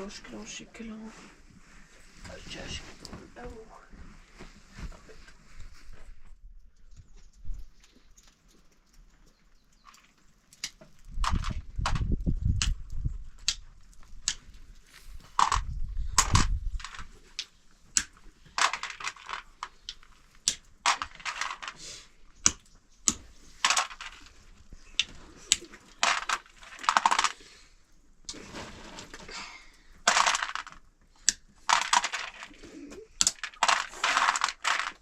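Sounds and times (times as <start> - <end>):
hard objects clicking and clattering: 7.9 - 27.6, 28.3 - 35.0.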